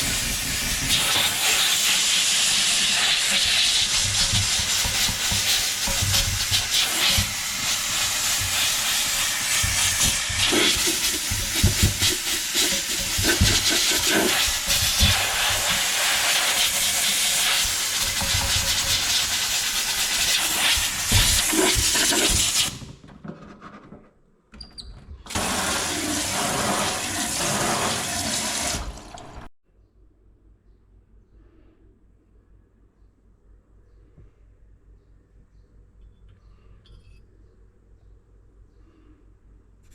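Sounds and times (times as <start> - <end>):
steam cleaner hissing: 0.0 - 22.7, 25.3 - 28.9.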